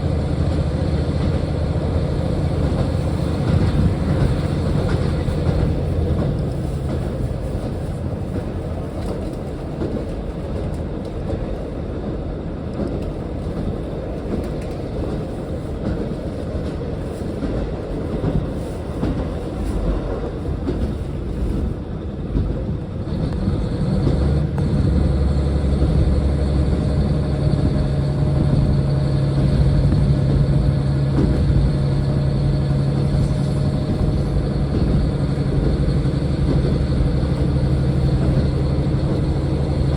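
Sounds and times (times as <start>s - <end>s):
low engine drone: 0.0s - 7.5s, 23.1s - 39.9s
railcar rumble: 0.0s - 39.9s
rails clickety-clack: 0.0s - 39.9s.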